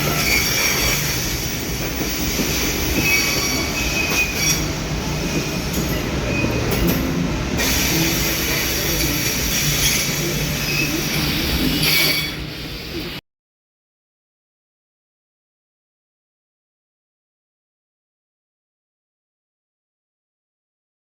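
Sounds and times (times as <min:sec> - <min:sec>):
thin wheel squeals: 0:00.0 - 0:01.6, 0:02.6 - 0:04.7, 0:09.5 - 0:12.6
train wheels rumbling on rails: 0:00.0 - 0:13.2.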